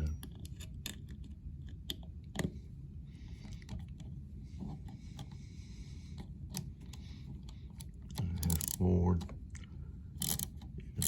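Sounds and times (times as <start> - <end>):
ratchet driver clicking: 8.4 - 8.8, 10.2 - 10.6.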